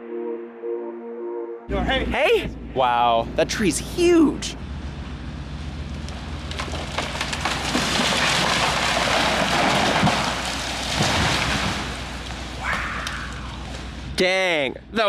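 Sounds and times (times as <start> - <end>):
low engine hum: 1.7 - 15.0
tree crashing down: 5.0 - 14.2
wood cracking and snapping: 5.6 - 14.2.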